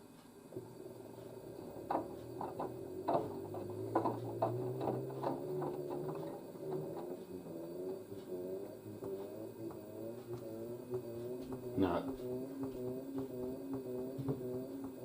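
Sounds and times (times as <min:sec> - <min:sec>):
washer drum motor whining: 0:00.0 - 0:15.0
knocks and clicks from drum: 0:01.5 - 0:07.3, 0:09.0 - 0:15.0.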